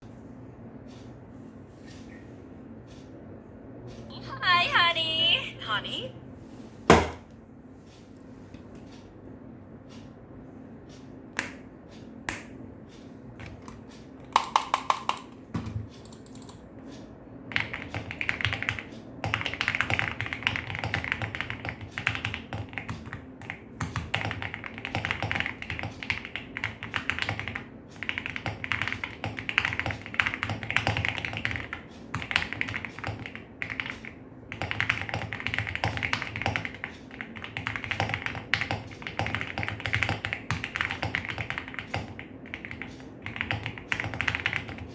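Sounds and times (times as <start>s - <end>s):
mechanical keyboard typing: 14.2s - 15.4s, 16.0s - 16.6s, 17.5s - 44.9s.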